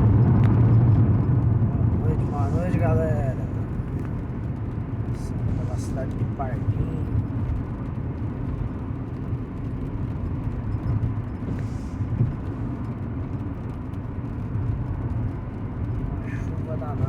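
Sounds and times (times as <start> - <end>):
truck engine and road rumble: 0.0 - 17.0.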